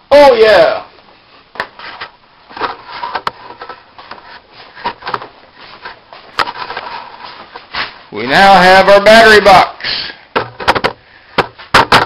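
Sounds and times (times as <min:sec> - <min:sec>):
rubbing and scraping: 0:01.6 - 0:08.1
sharp clicks and knocks: 0:10.3 - 0:12.0.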